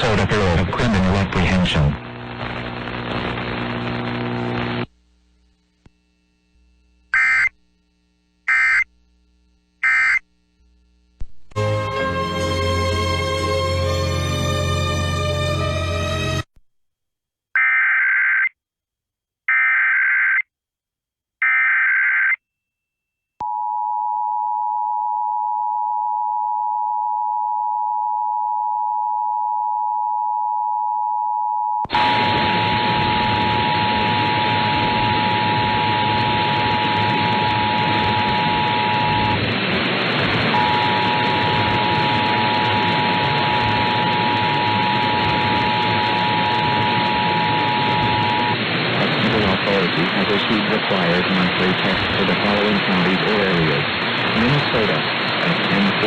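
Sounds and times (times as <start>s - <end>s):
loud static hiss: 0.0s - 16.4s, 31.9s - 56.0s
two-tone attention signal: 40.5s - 48.6s.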